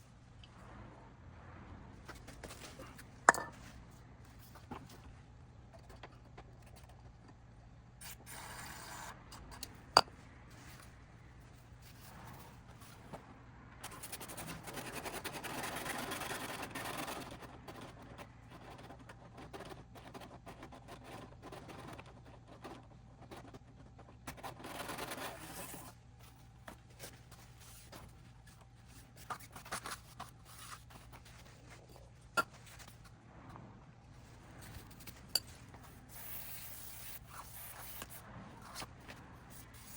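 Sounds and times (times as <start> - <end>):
steady low hum: 0.0 - 39.9
rubbing and scraping: 2.0 - 5.2, 13.9 - 33.2, 34.2 - 39.9.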